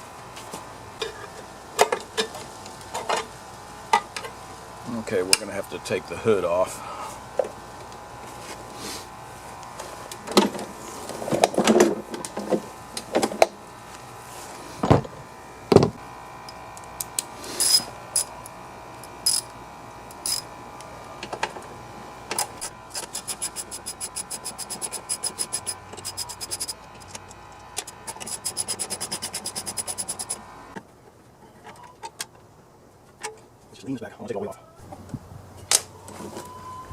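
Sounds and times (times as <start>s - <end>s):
ratchet wrench clicking: 19.2s - 19.5s, 20.2s - 20.4s, 22.6s - 30.4s.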